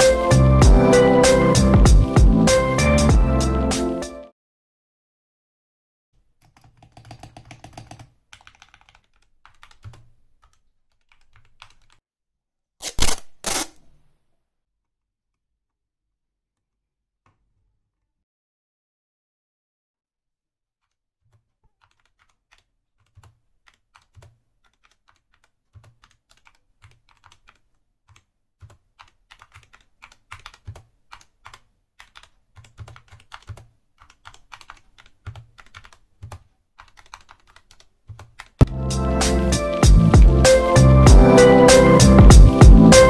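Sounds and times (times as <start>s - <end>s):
mechanical keyboard typing: 6.4s - 12.0s, 21.3s - 38.6s.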